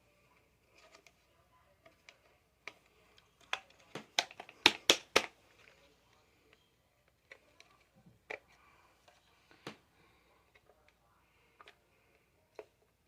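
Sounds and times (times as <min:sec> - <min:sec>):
sharp clicks and taps: 0:01.8 - 0:05.3.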